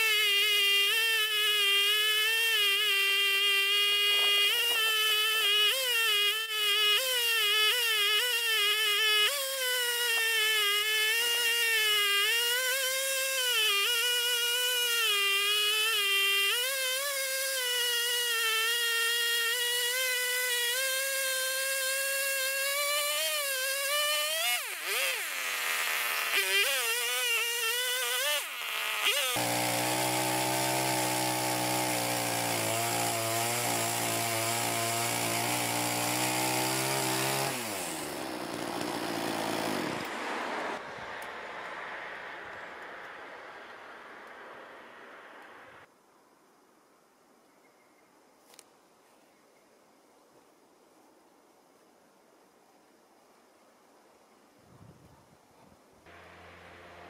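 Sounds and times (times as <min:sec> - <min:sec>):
chainsaw cutting a log: 0:00.0 - 0:40.8, 0:56.1 - 0:57.0.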